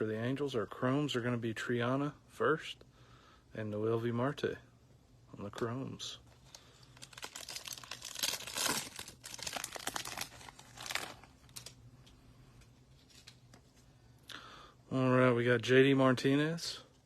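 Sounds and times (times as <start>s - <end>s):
foil wrapper crinkling and tearing: 6.4s - 11.8s.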